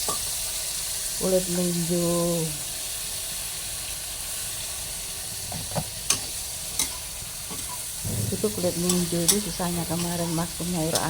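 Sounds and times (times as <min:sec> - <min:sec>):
food sizzling in hot oil: 0:00.0 - 0:11.0
utensil clicking against pan: 0:08.8 - 0:10.3.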